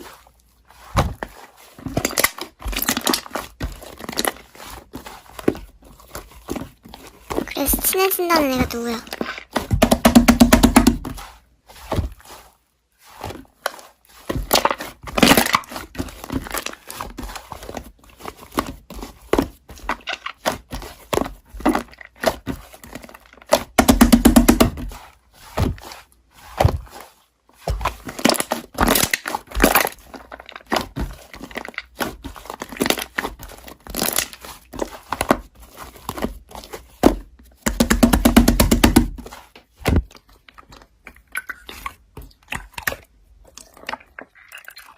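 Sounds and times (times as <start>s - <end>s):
slime squelching: 0.0s - 44.9s
slime crackling and popping: 1.9s - 6.5s, 13.3s - 18.9s, 28.0s - 35.5s.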